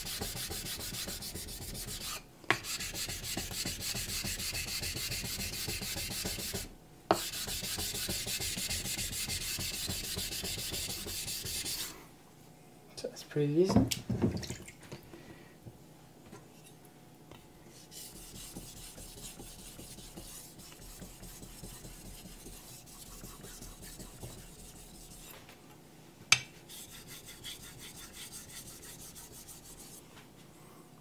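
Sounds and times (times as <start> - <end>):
knife scraping on wet whetstone: 0.0 - 11.9, 17.8 - 25.3, 26.7 - 30.0.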